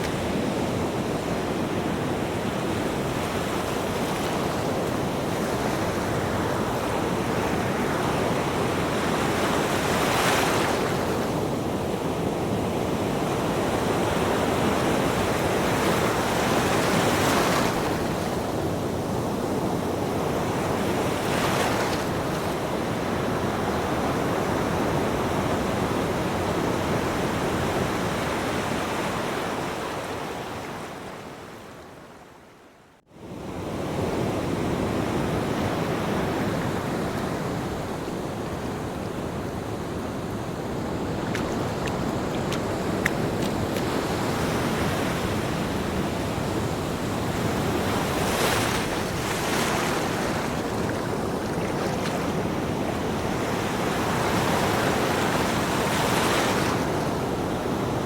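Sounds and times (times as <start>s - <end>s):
ocean waves washing: 34.3s - 58.0s.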